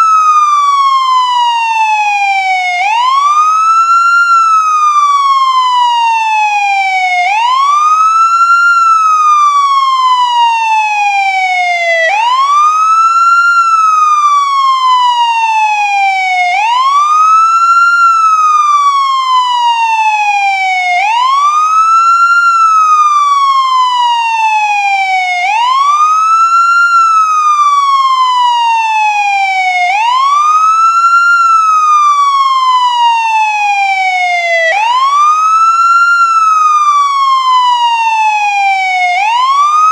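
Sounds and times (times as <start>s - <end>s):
ambulance siren wailing: 0.0s - 39.9s.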